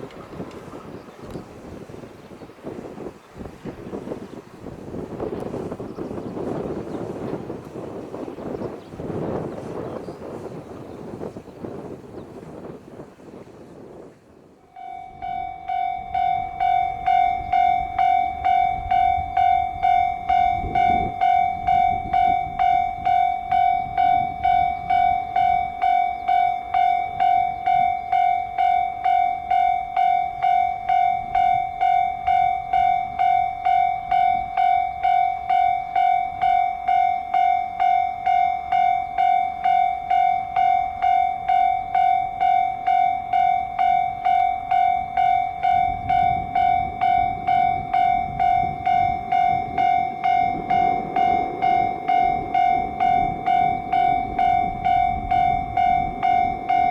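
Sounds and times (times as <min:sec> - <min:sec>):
level crossing alarm ringing: 0:00.0 - 0:02.0, 0:14.6 - 0:56.9
low wind rumble: 0:00.0 - 0:56.9.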